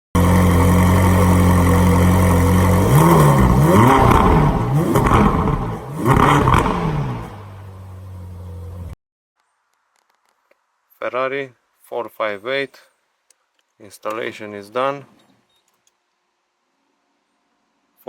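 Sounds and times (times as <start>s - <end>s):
car engine idling and revving: 0.2s - 9.0s.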